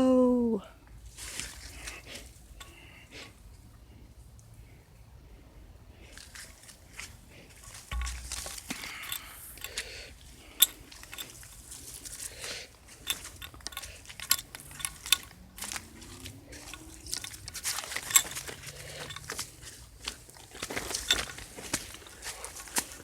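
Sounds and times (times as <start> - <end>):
footsteps crunching on dirt trail: 15.6 - 23.0.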